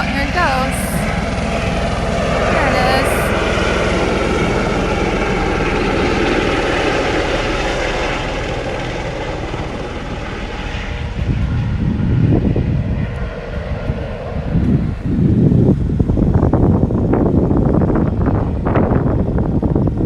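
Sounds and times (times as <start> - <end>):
helicopter engine and rotor: 0.0 - 20.0
wind buffeting microphone: 0.0 - 20.0.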